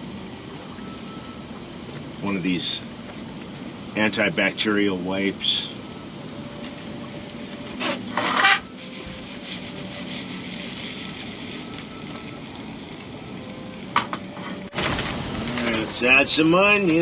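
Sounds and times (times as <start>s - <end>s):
food sizzling in a pan: 7.1s - 13.8s
scraping sounds: 7.7s - 11.6s.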